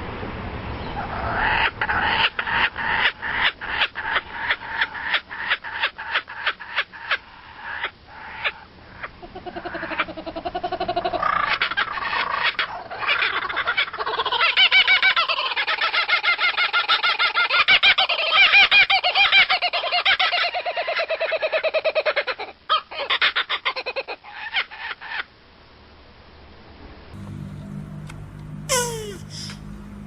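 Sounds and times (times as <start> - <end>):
animal squawking rapidly: 28.7 - 29.6.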